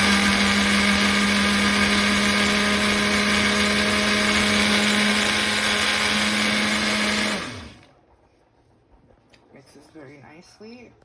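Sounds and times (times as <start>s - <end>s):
electric blender running: 0.0s - 7.9s.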